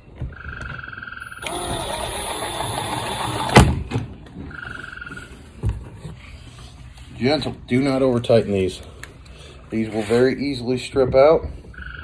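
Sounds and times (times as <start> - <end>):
power driver motor whining: 1.4 - 4.0.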